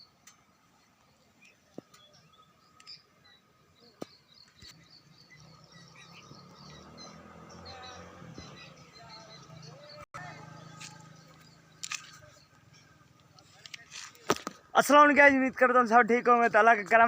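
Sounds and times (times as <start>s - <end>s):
high chirping: 0.0s - 13.2s.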